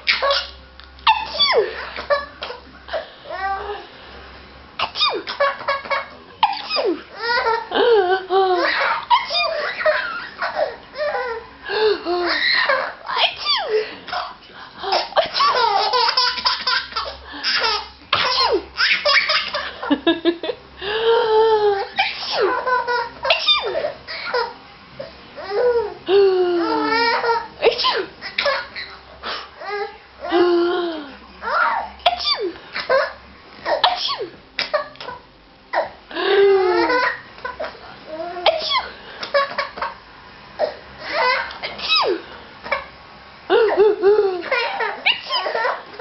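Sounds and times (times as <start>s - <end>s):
baby laughing: 0.0s - 3.8s, 4.8s - 20.2s, 21.2s - 24.6s, 25.4s - 29.0s, 29.6s - 34.0s, 34.6s - 40.0s, 40.6s - 42.9s, 43.5s - 46.0s
woman sneezing: 27.6s - 28.1s.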